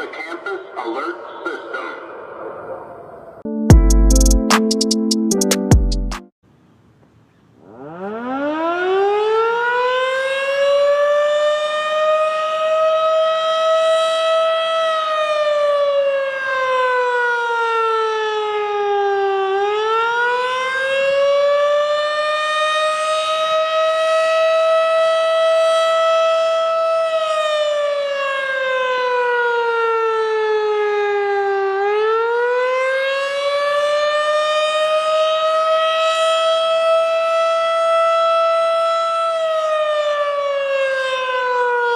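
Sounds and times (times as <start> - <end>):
warning siren wailing: 7.6 - 41.9.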